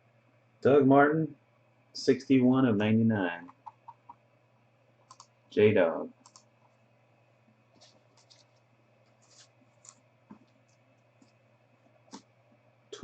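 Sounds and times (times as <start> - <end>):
trading cards clicking and scratching: 7.8 - 11.4.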